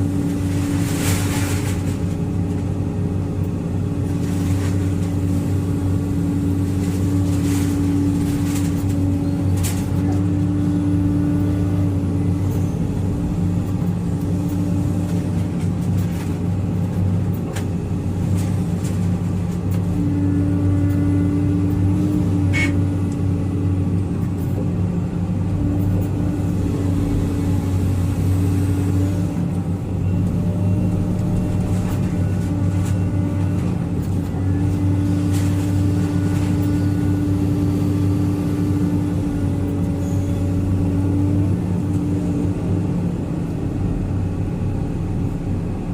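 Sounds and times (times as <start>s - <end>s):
engine running steadily: 0.0s - 45.9s.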